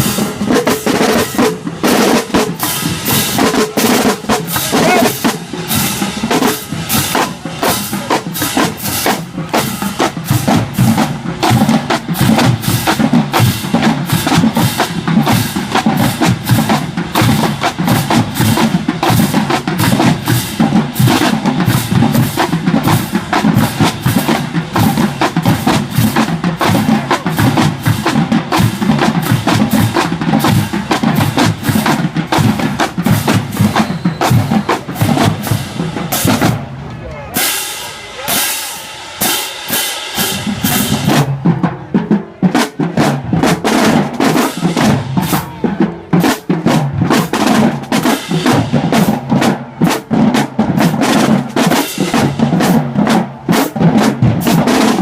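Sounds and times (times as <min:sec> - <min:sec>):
bass drums: 0:00.0 - 0:39.4
snare drums: 0:00.0 - 0:55.0.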